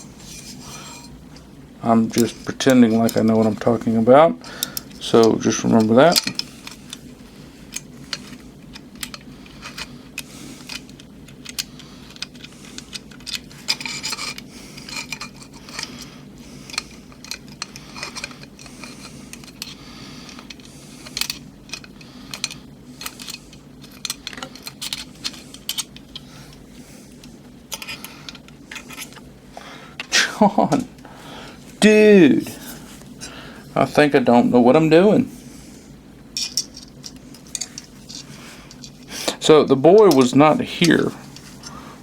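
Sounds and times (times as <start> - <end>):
low steady hum: 0.0 - 42.0
small metal parts clinking: 7.7 - 16.0, 16.7 - 26.2, 27.7 - 29.2, 36.4 - 39.0.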